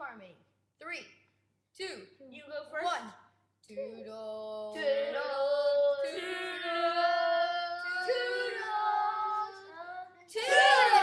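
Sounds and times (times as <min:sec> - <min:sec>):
young voices singing in harmony: 0:03.7 - 0:11.0.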